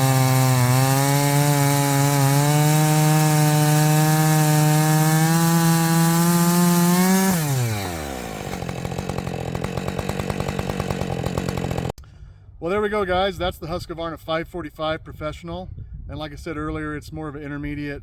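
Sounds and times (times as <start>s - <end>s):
chainsaw revving then idling: 0.0s - 12.0s.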